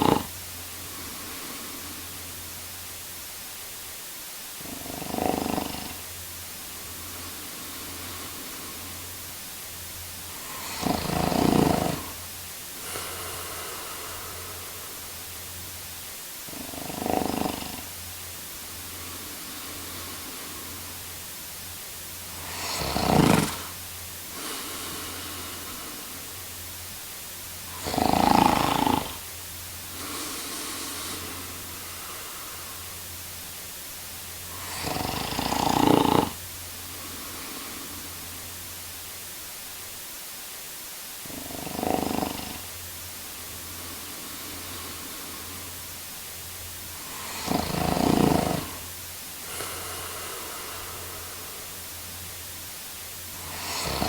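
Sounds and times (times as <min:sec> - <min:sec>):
man snoring: 0:00.0 - 0:02.6, 0:04.6 - 0:06.2, 0:06.8 - 0:09.2, 0:10.2 - 0:15.4, 0:16.5 - 0:21.2, 0:22.3 - 0:26.5, 0:27.7 - 0:33.0, 0:34.4 - 0:38.5, 0:41.2 - 0:42.8, 0:43.4 - 0:45.9, 0:46.9 - 0:51.9, 0:53.3 - 0:54.0
steady background hiss: 0:00.0 - 0:54.0.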